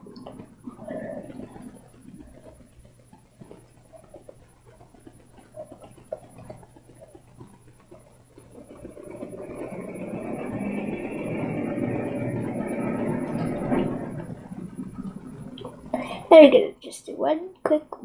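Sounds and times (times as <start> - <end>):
steady hum: 0.0 - 18.0.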